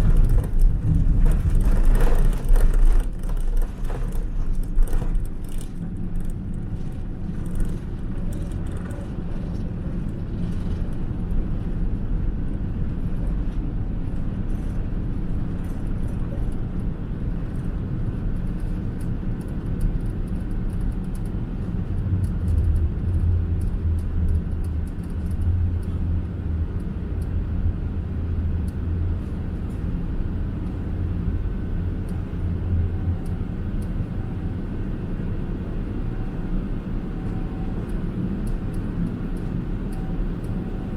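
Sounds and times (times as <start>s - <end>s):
airplane cabin low rumble: 0.0s - 40.9s
deep engine drone: 0.0s - 40.9s
light ticking rattles: 13.1s - 27.5s.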